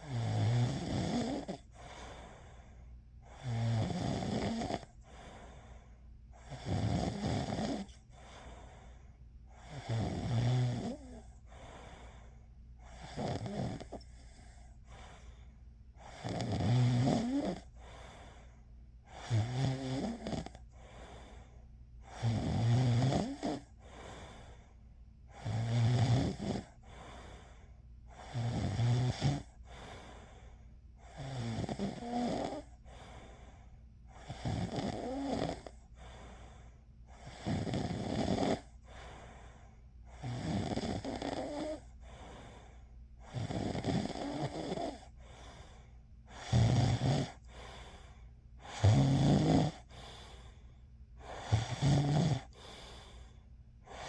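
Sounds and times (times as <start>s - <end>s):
person snoring: 0.0s - 2.6s, 3.3s - 5.6s, 6.4s - 8.8s, 9.5s - 12.2s, 12.8s - 14.7s, 16.0s - 18.1s, 19.1s - 21.3s, 22.1s - 24.6s, 25.3s - 27.0s, 28.1s - 30.1s, 31.0s - 33.2s, 34.1s - 36.3s, 37.1s - 39.2s, 40.1s - 42.0s, 43.2s - 45.7s, 46.3s - 50.6s, 51.2s - 54.0s
faint breath sounds: 0.0s - 54.0s.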